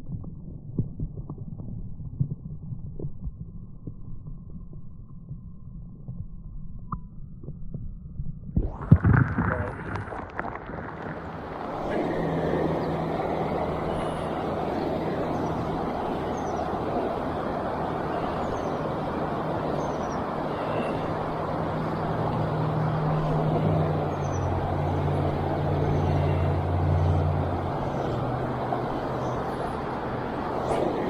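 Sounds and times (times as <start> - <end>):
creek water rushing: 8.8 - 31.0
passing road traffic hum: 8.8 - 31.0.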